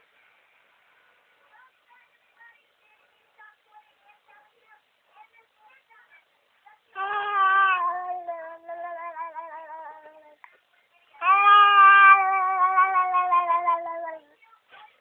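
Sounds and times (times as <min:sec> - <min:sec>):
baby vocalizing: 0:07.0 - 0:10.4.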